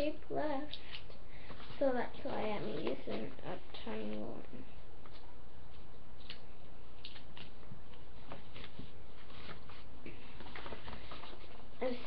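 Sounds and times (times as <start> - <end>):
low background hum: 0.0 - 12.0
paper rustling and crinkling: 1.4 - 4.2, 7.0 - 12.0.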